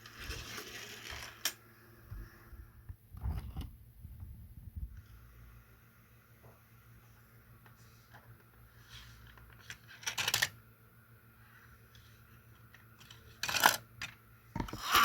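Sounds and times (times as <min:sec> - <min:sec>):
plastic toy track clattering: 0:00.1 - 0:01.6, 0:09.6 - 0:10.6, 0:13.0 - 0:15.0.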